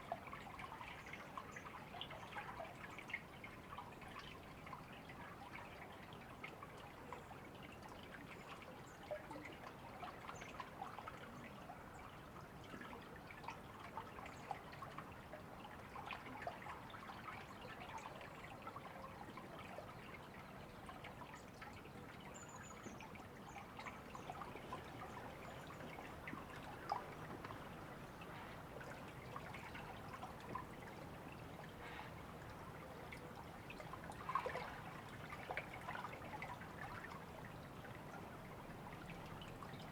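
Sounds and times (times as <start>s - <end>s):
small water splashes: 12.7s - 39.9s
river water babbling: 13.2s - 39.9s.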